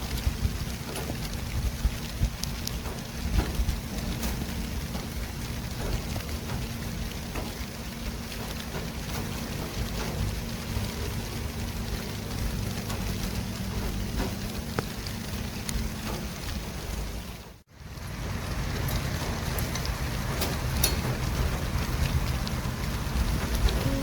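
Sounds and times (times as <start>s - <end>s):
constant low hum: 0.0s - 24.0s
rumble of vehicles: 0.0s - 24.0s
light ticks: 18.8s - 24.0s.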